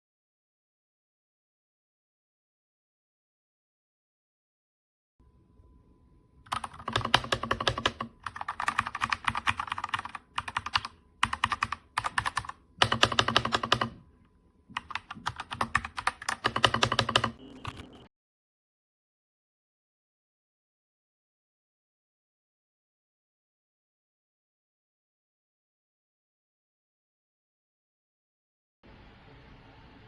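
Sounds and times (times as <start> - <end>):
mechanical keyboard typing: 6.5 - 14.0, 14.7 - 18.1.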